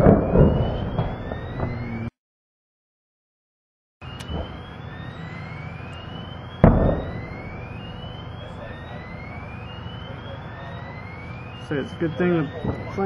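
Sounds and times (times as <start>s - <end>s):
loud explosion blast: 0.0s - 2.1s, 6.6s - 7.9s
faint rising tone: 1.3s - 2.1s.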